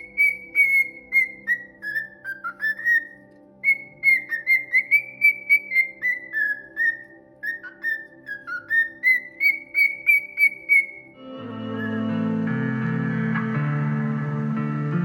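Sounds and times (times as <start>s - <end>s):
songbird whistling: 0.0s - 11.2s.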